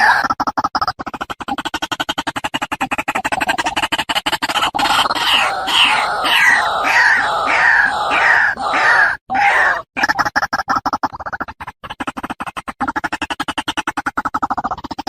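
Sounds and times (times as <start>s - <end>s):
animal squawking: 0.0s - 0.3s, 4.5s - 10.2s
rapid clicking: 0.2s - 8.7s.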